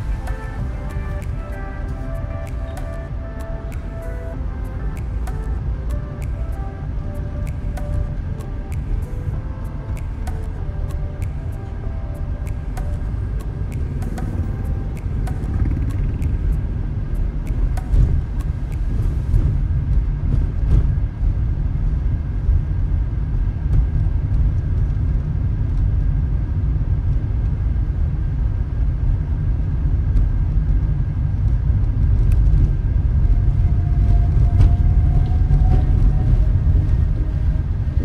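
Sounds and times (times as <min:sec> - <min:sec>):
light ticks: 0:00.0 - 0:20.9
car driving rumble: 0:12.9 - 0:38.0.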